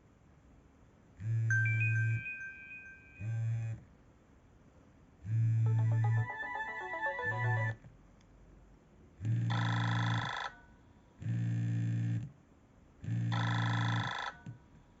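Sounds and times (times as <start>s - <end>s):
low buzzy ringtone: 1.3s - 3.8s, 5.4s - 7.8s.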